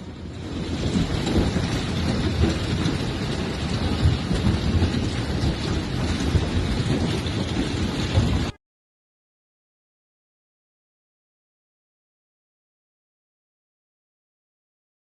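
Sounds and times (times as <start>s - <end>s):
hail pounding: 0.0s - 8.6s.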